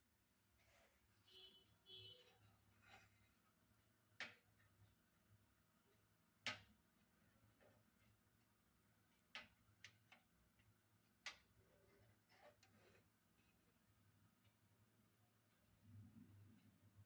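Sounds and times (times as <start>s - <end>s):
faint clicks and knocks: 9.0s - 17.0s.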